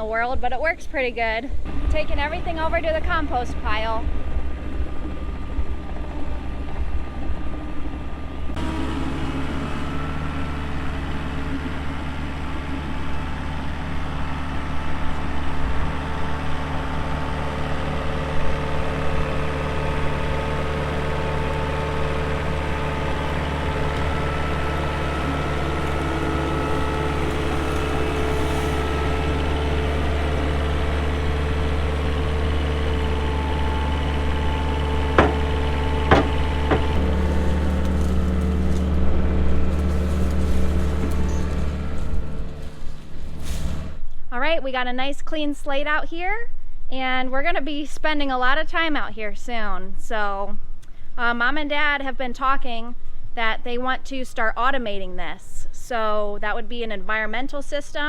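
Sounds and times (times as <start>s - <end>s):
small diesel engine running: 1.5s - 44.1s.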